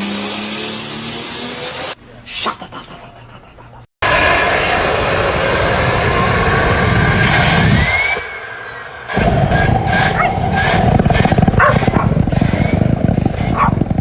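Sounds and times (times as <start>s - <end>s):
car engine running: 9.1s - 14.0s.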